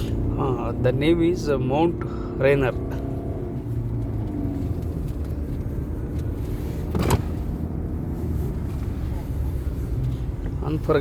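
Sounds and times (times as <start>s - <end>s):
car road and engine rumble: 0.0s - 11.0s.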